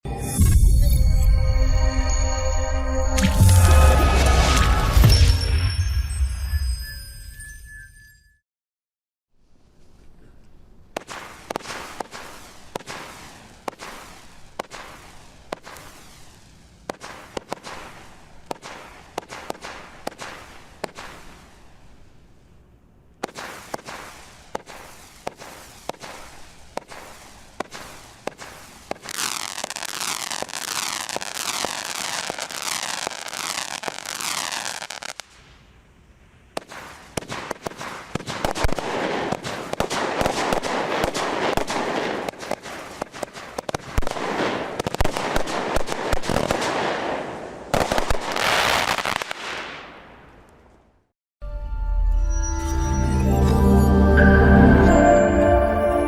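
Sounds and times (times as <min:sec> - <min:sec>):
crackling firework bursts: 0:03.2 - 0:05.8, 0:10.9 - 0:22.3, 0:23.2 - 0:50.8
firework shots launching: 0:11.0 - 0:21.8, 0:23.2 - 0:35.4, 0:36.5 - 0:50.5.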